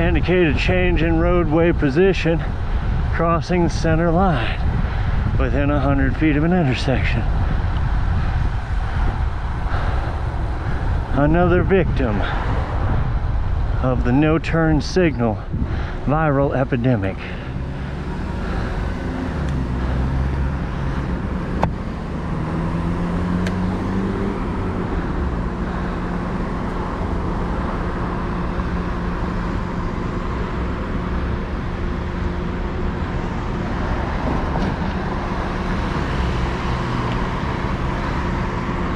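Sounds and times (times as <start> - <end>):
steady road noise: 0.0 - 38.9
car accelerating past: 17.4 - 31.4.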